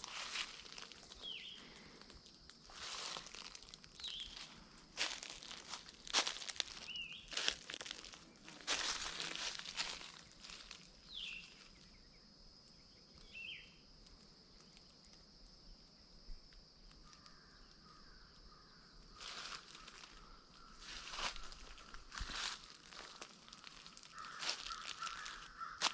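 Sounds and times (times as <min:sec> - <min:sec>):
footsteps crunching dry leaves: 0:00.0 - 0:11.8, 0:19.2 - 0:25.9
falling bird chirps: 0:00.2 - 0:01.8, 0:02.8 - 0:11.9, 0:19.2 - 0:25.9.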